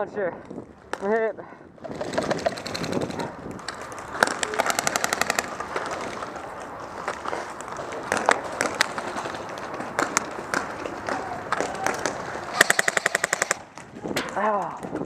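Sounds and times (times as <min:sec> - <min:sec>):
airsoft guns firing: 0:04.2 - 0:05.6, 0:10.5 - 0:13.7.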